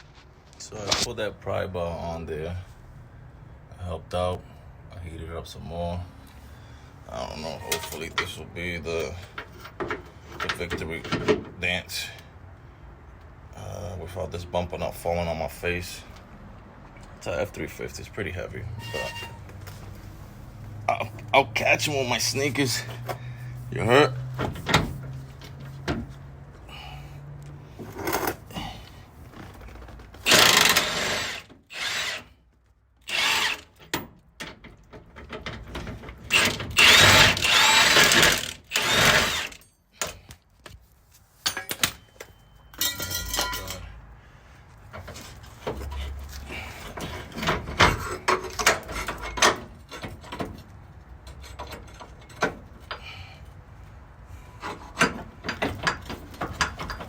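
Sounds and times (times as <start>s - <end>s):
power tool bursts: 30.2s - 32.3s, 33.0s - 33.8s, 36.3s - 39.6s
metal knocks and clanks: 54.7s - 57.0s.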